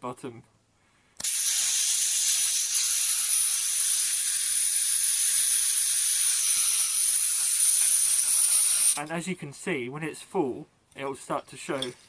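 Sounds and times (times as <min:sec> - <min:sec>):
gas hissing into magazine: 0:01.2 - 0:09.0.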